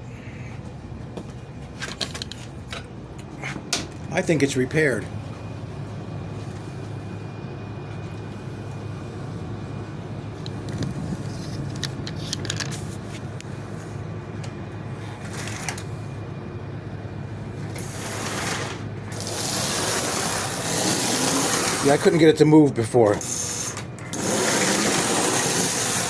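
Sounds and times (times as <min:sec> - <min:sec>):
toy train motor humming: 0:17.7 - 0:22.1, 0:23.2 - 0:26.0.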